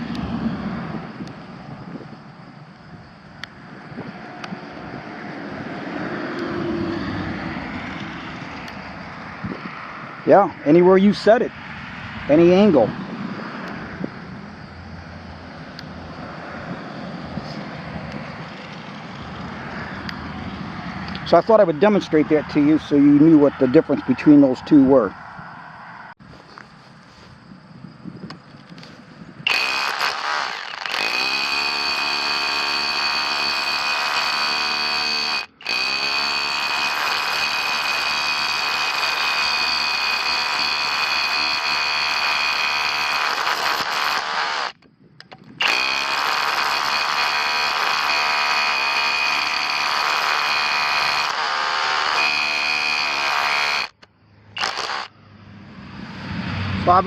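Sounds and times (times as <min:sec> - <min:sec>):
rotary hammer chiseling: 0:29.5 - 0:54.0, 0:54.6 - 0:55.1.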